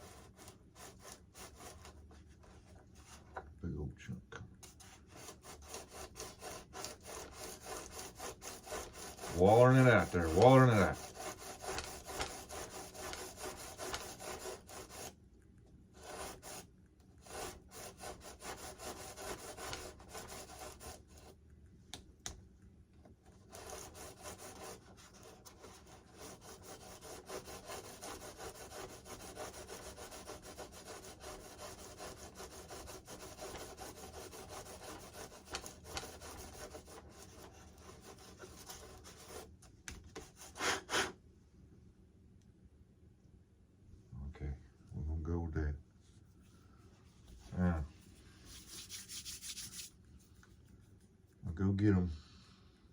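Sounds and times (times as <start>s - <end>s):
drill bit rasping in foam: 5.3s - 15.1s.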